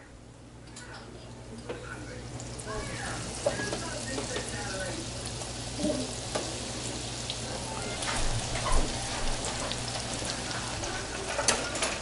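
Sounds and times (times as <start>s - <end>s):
fritters sizzling in oil: 2.2s - 12.0s.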